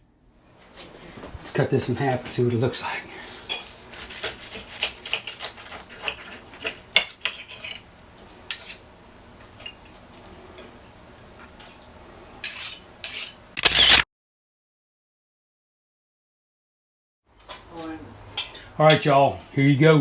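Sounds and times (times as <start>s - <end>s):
knife and fork on plate: 3.4s - 9.9s, 12.4s - 13.4s.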